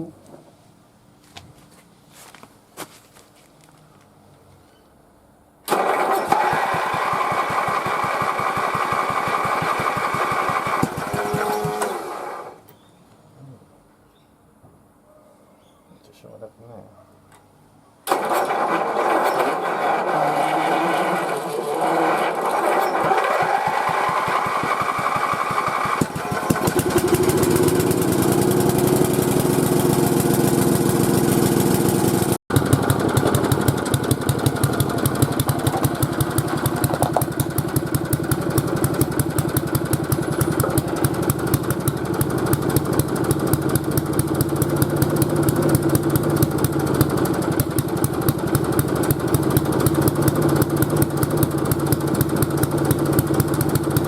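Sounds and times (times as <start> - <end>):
mower engine cranking and running: 5.6 - 12.7, 18.1 - 54.0.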